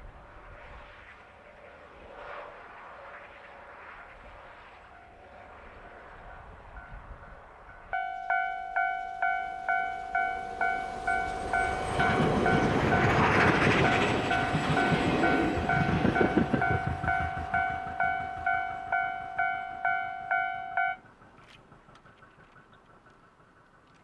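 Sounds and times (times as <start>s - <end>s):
train passing with rushing rumble: 0.0s - 24.0s
level crossing warning bell ringing: 7.7s - 21.0s.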